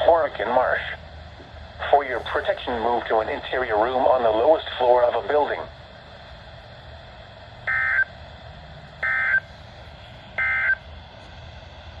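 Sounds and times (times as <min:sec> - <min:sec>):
faint radio hiss: 0:00.0 - 0:01.0, 0:01.6 - 0:08.0
digital data tone bursts: 0:07.7 - 0:08.1, 0:09.0 - 0:09.4, 0:10.4 - 0:10.8.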